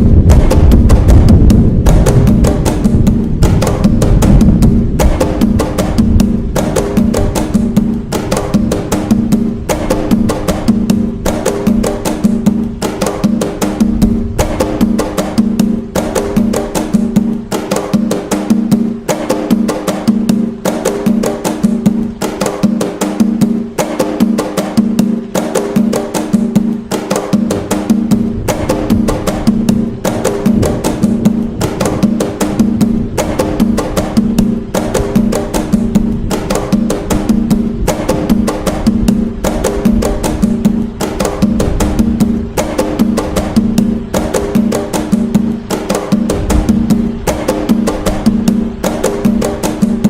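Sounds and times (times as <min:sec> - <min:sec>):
hand drums playing rhythm: 0:00.0 - 0:50.0.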